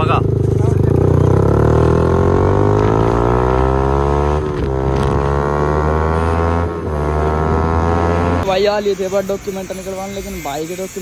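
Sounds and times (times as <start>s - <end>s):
motorcycle engine accelerating: 0.0s - 8.7s.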